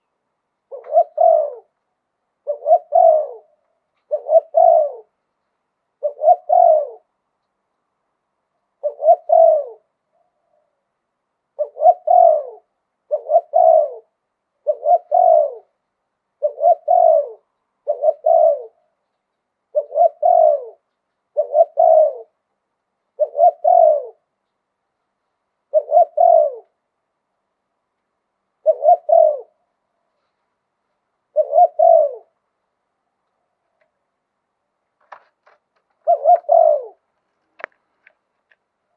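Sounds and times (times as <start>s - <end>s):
dove cooing: 0.0s - 1.8s, 2.4s - 5.2s, 6.0s - 7.2s, 8.7s - 10.8s, 11.5s - 19.0s, 19.7s - 22.4s, 23.1s - 24.3s, 25.6s - 26.8s, 28.6s - 30.3s, 31.2s - 32.4s, 35.1s - 37.7s.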